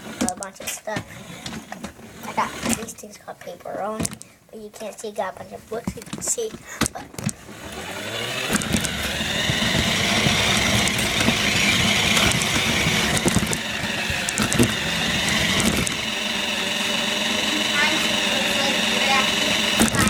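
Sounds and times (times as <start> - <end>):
toy car motor whirring: 0.0 - 3.1, 3.7 - 20.0
toy car knocking on floor: 8.4 - 16.1, 19.7 - 20.0.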